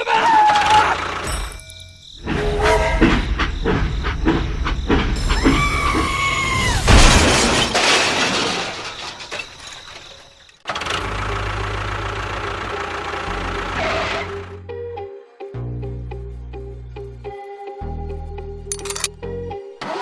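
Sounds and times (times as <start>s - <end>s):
loud crash: 5.2s - 9.8s.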